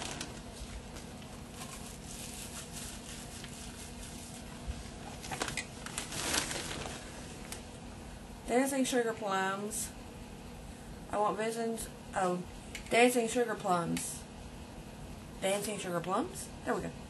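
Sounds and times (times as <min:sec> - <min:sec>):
faint rustling and handling: 0:00.0 - 0:07.7
low steady hum: 0:00.0 - 0:17.0.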